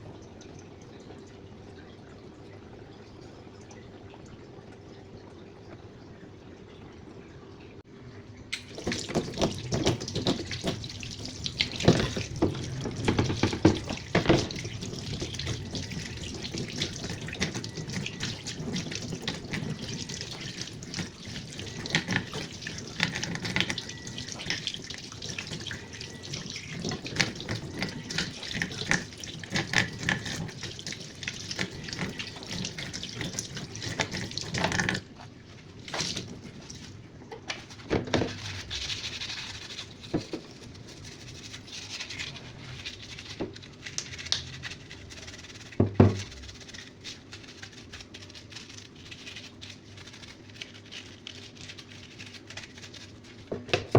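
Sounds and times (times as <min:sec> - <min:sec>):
tap water running and splashing: 0:00.0 - 0:53.9
filter knocking and rubbing: 0:08.6 - 0:48.2, 0:52.5 - 0:53.9.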